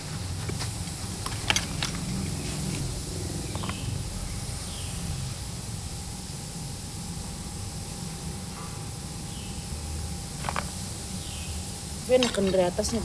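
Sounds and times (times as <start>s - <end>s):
low background hum and hiss: 0.0s - 13.0s
clicks of parts being handled: 0.5s - 2.1s, 10.4s - 10.7s, 12.1s - 12.6s.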